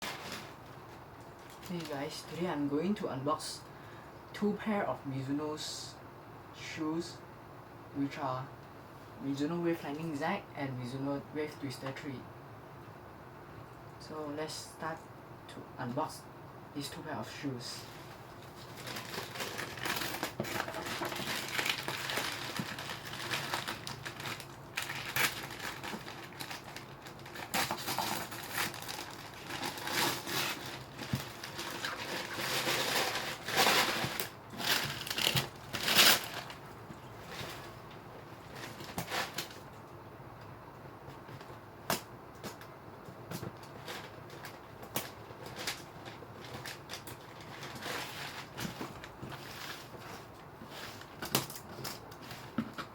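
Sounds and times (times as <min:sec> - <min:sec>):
packaging crinkling and rustling: 0:00.0 - 0:02.4, 0:17.9 - 0:37.8, 0:38.4 - 0:39.8, 0:43.3 - 0:52.9.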